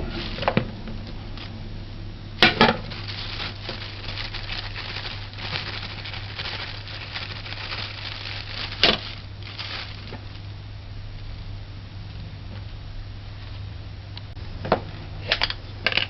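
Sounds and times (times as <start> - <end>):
flour rustling and scraping: 0.0 - 0.6, 2.8 - 10.5
steady low hum: 0.0 - 16.0.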